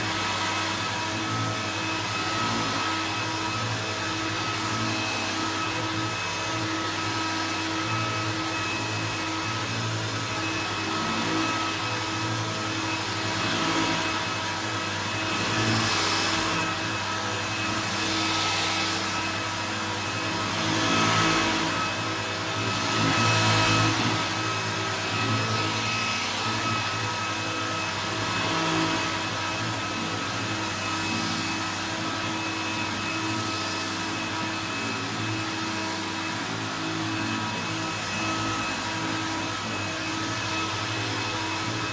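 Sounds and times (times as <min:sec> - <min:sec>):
vacuum cleaner running: 0:00.0 - 0:41.9.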